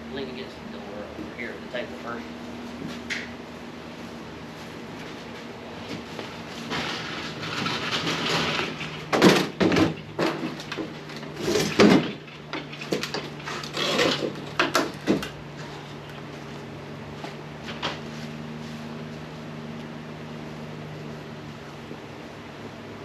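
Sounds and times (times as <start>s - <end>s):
objects knocking and clunking: 5.9s - 15.4s.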